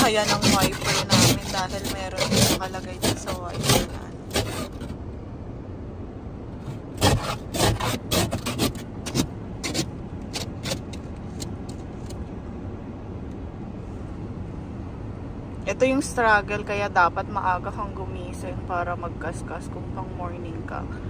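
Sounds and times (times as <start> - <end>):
ice scraped off windshield: 0.0 - 5.0, 6.7 - 10.8
steady low rumble: 0.0 - 21.0.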